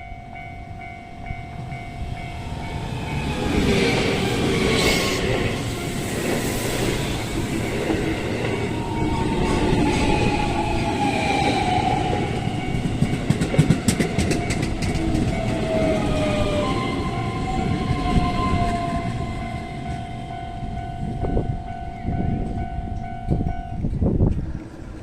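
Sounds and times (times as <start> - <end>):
electric train running: 0.3 - 23.1
wheels clacking over rail joints: 2.4 - 19.2.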